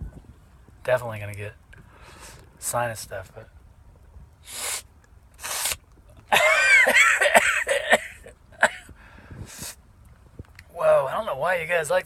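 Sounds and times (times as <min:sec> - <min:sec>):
man breathing in sharply: 0:01.8 - 0:02.5, 0:08.9 - 0:09.8
man sneezing and coughing: 0:05.4 - 0:08.9.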